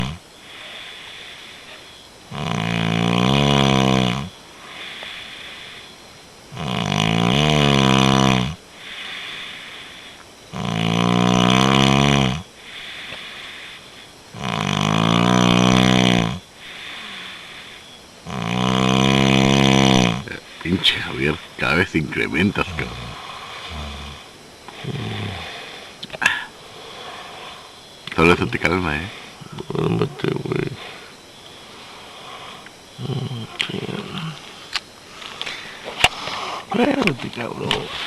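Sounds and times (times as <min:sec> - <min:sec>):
man snoring heavily: 0:00.0 - 0:01.6, 0:02.3 - 0:05.9, 0:06.5 - 0:21.6, 0:22.6 - 0:34.4
soft breathing: 0:00.4 - 0:02.0, 0:04.5 - 0:06.1, 0:08.7 - 0:10.4, 0:12.6 - 0:14.3, 0:16.6 - 0:18.0, 0:22.8 - 0:28.0, 0:30.7 - 0:36.8.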